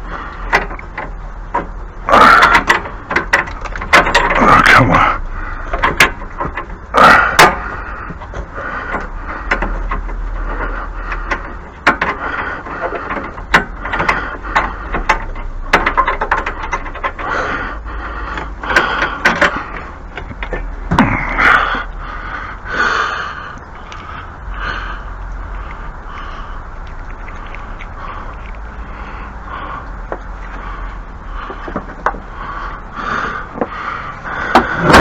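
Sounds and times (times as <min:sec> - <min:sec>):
objects knocking and rustling: 0:00.0 - 0:22.0, 0:25.4 - 0:35.0
low steady hum: 0:00.0 - 0:35.0.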